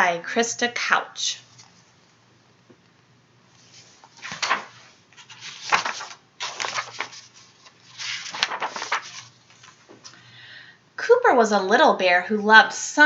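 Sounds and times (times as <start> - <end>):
book pages rustling: 1.5 - 2.0, 3.5 - 10.1.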